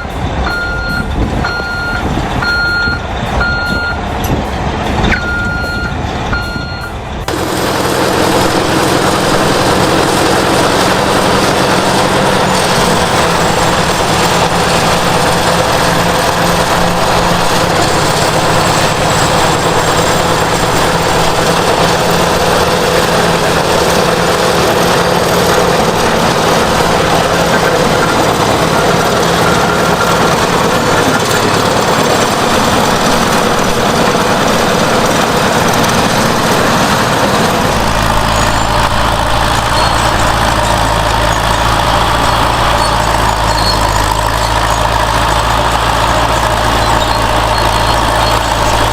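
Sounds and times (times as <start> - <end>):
reversing alarm beeping: 0.0 - 4.2, 5.0 - 7.0, 26.0 - 44.9, 46.0 - 48.9
heavy construction machinery engine: 0.0 - 48.9.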